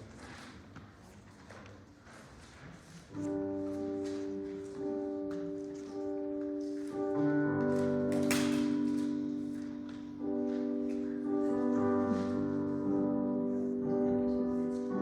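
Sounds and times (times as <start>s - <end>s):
sustained keyboard chords: 3.2s - 15.0s.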